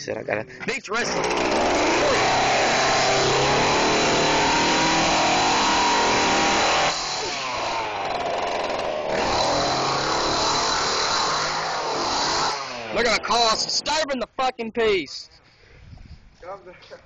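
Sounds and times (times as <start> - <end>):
chainsaw engine revving: 0.9 - 14.0.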